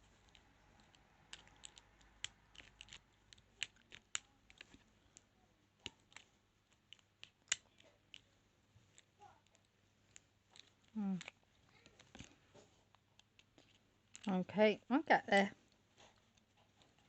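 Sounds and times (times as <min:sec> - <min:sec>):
lock pick clicking and scraping: 0:00.2 - 0:04.8.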